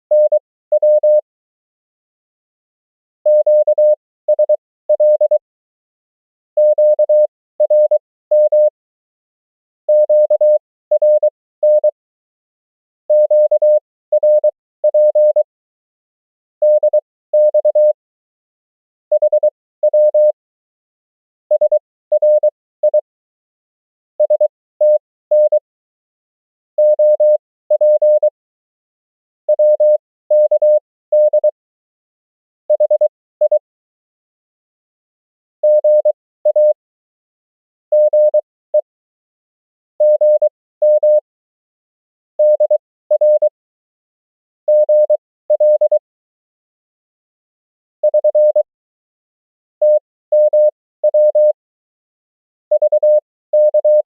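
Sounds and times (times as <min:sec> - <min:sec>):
morse code beeping: 0:40.0 - 0:41.2, 0:49.8 - 0:51.5, 0:52.7 - 0:54.0.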